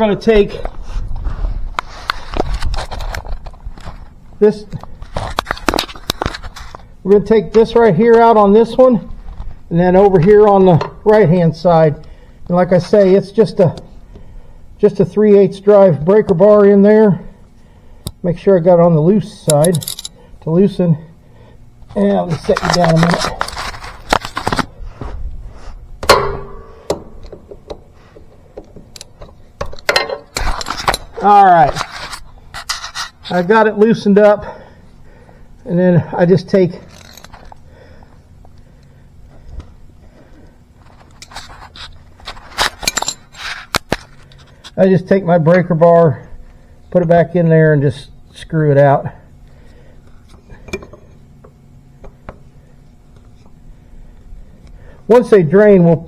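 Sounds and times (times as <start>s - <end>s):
low steady hum: 0.0s - 56.0s
metal clicks and scrapes: 21.9s - 24.7s, 26.1s - 33.5s
metallic clank with ring: 26.1s - 27.2s.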